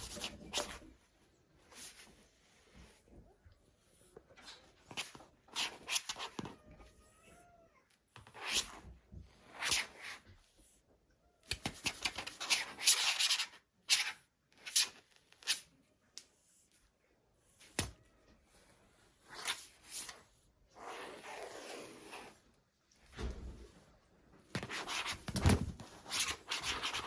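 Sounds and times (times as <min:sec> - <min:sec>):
rubbing and rustling: 0:00.0 - 0:03.2, 0:18.4 - 0:27.0.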